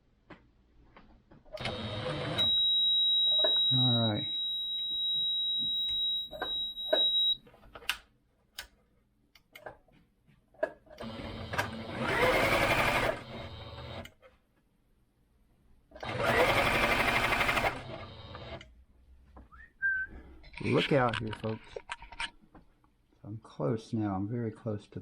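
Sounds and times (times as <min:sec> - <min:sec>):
sewing machine high beep: 0:02.3 - 0:07.4
sewing machine motor running: 0:11.0 - 0:14.0, 0:16.0 - 0:18.6.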